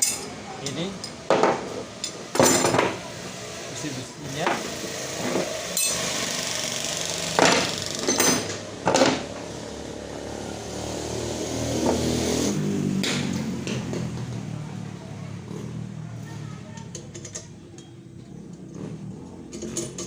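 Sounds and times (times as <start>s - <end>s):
vehicle engine passing: 0.0s - 20.0s
steel parts clanking: 4.4s - 9.3s.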